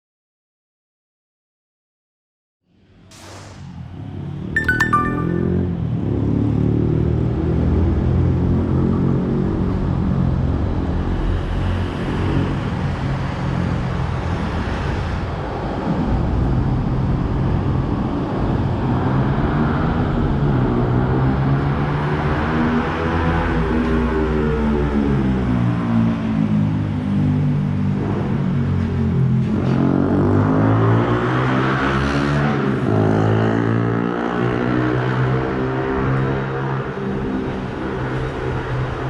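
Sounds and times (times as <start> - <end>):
short high tones: 4.6 - 5.9.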